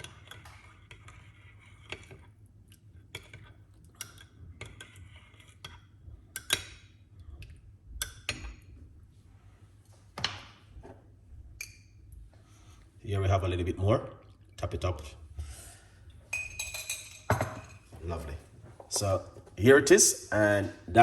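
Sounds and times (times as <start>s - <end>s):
spoon clinking against a cup: 16.3s - 17.8s.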